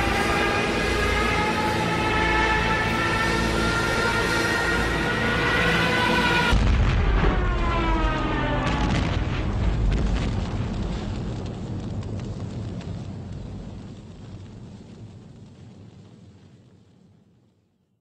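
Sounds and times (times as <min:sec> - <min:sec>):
hand-cranked air raid siren winding down: 0:00.0 - 0:06.6
deep explosion-like rumble with crackling: 0:06.4 - 0:18.0.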